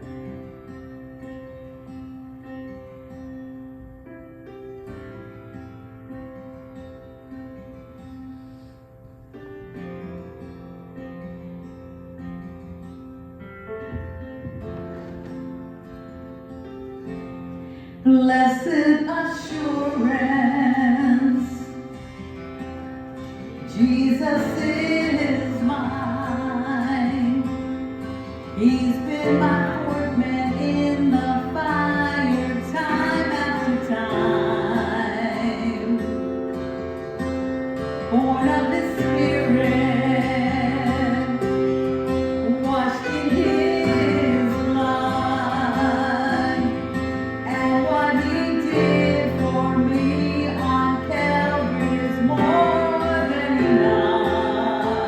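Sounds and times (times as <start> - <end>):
recorded backing track: 0.0 - 55.0
woman singing gospel: 18.1 - 21.8, 23.6 - 27.7, 28.5 - 36.3, 38.1 - 41.6, 42.4 - 55.0.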